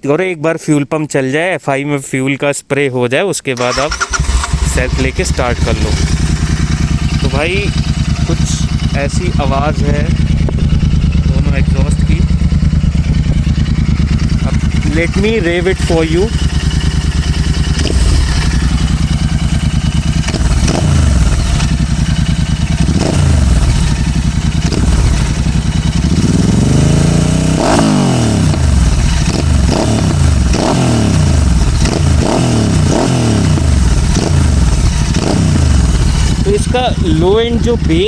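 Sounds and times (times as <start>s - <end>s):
motorcycle engine revving: 3.6s - 38.0s.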